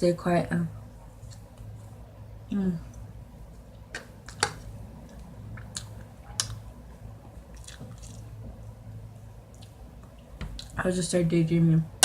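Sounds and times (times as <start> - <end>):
chewing soft wet fruit: 5.0 - 8.8, 9.4 - 10.8
sharp wet clicks: 5.6 - 6.6.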